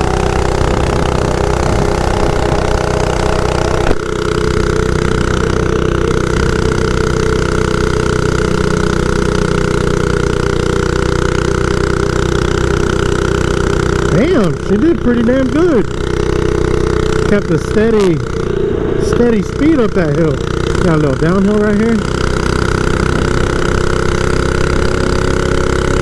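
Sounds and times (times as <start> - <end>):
small engine running under load: 0.0 - 26.0.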